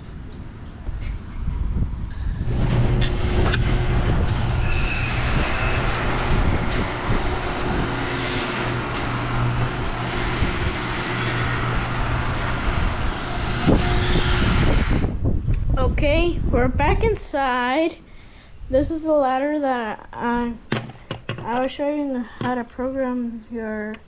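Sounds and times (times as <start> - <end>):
garage door rumbling: 1.0 - 15.4
garage door opener motor hum: 2.1 - 15.2.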